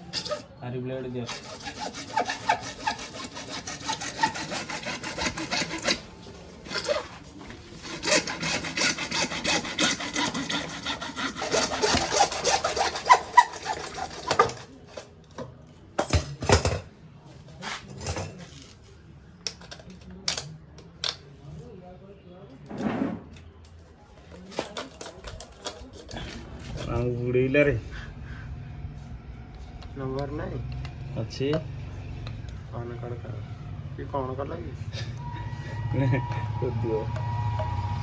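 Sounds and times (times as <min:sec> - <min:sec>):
hacksaw sawing plastic pipe: 0:00.0 - 0:00.5, 0:01.2 - 0:14.8.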